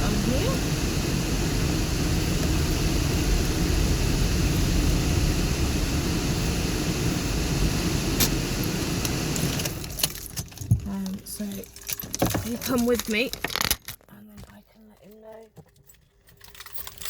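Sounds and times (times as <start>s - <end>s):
car engine idling: 0.0s - 13.3s.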